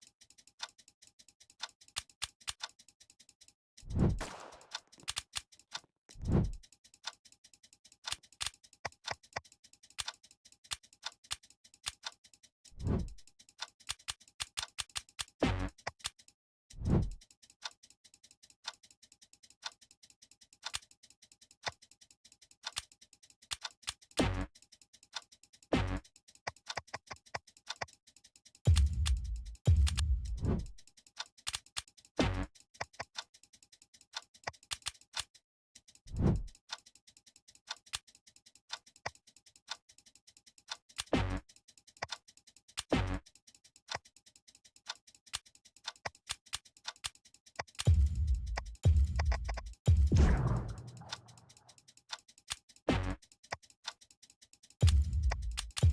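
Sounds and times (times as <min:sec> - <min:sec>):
timer ticking: 0:00.0 - 0:55.9
deep hits: 0:49.9 - 0:51.1
short low boom: 0:50.1 - 0:50.9.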